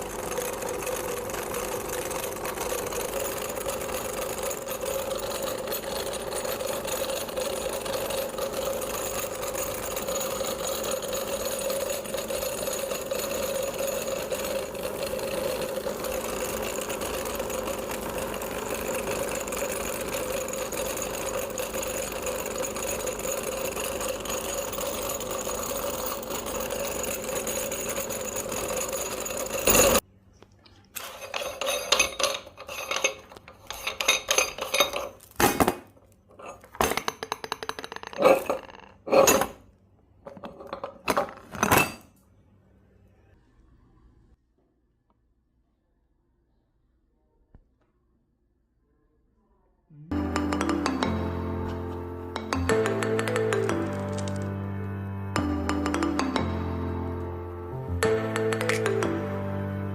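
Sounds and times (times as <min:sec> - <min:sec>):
meat grinder motor running: 0:00.0 - 0:30.0, 0:52.4 - 0:54.8
clinks and knocks: 0:00.1 - 0:30.0, 0:31.0 - 0:39.6, 0:40.2 - 0:42.1, 0:50.3 - 0:54.7, 0:58.0 - 0:59.1.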